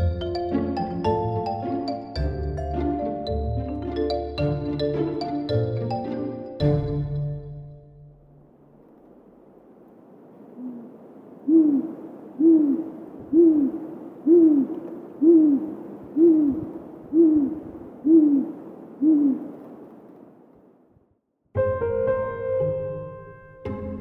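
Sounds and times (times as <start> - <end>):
owl hooting: 10.5 - 19.8.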